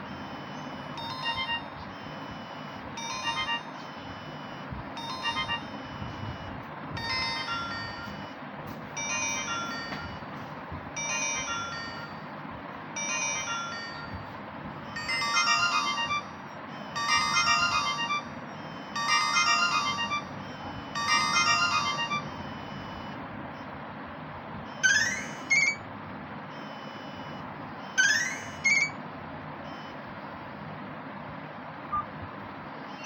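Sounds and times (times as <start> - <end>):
mobile phone ringtone: 0.0 - 8.4, 9.0 - 23.2, 24.7 - 25.8, 26.5 - 29.0.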